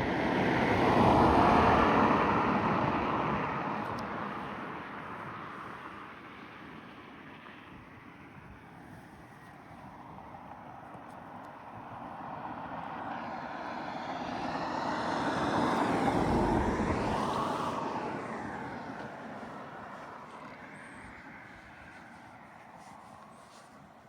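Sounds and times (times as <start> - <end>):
motor vehicle passing: 13.2 - 23.8.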